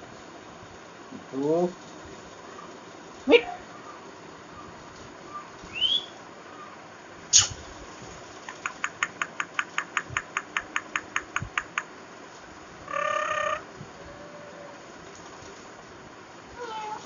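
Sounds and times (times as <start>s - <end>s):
parrot calling: 2.5s - 6.8s, 12.8s - 14.8s.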